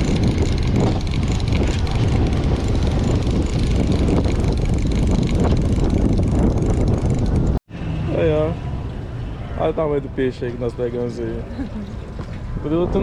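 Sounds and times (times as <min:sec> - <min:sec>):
boat engine rumbling: 0:00.0 - 0:08.8.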